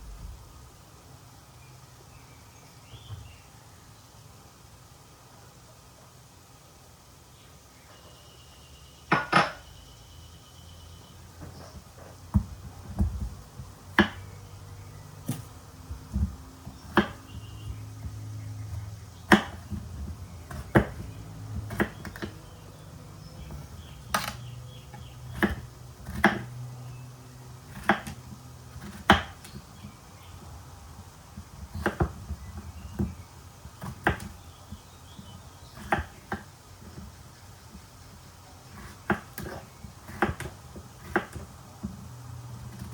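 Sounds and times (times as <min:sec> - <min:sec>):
low hum: 0:00.0 - 0:00.8.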